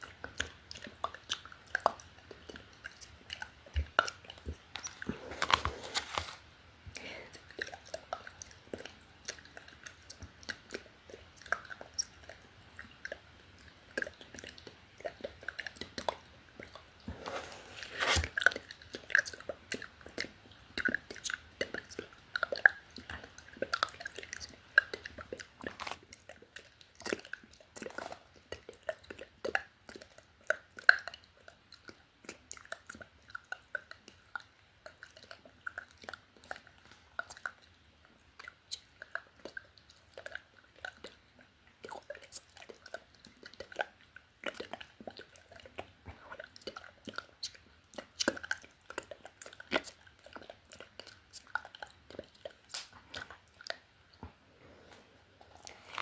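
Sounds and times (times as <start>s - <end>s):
wet mouth clicks and smacks: 18.1s - 37.7s, 41.8s - 53.8s.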